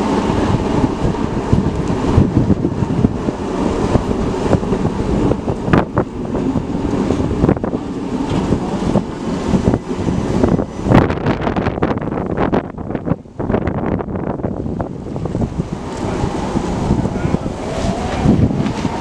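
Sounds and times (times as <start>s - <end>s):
wind buffeting microphone: 0.0s - 19.0s.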